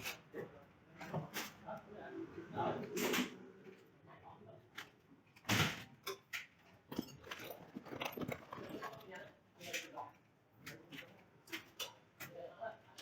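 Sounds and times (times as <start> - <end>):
hard objects knocking and clicking: 5.4 - 10.0.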